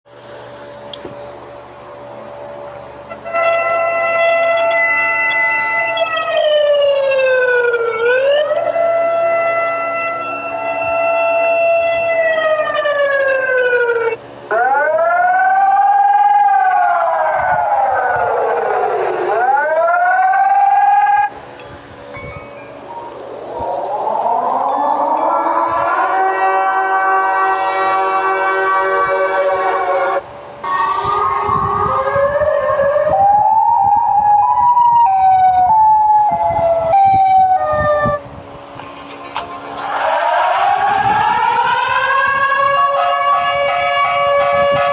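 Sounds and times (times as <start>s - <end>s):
siren alarm tone wailing: 3.0s - 21.4s, 22.1s - 38.3s, 39.6s - 44.9s.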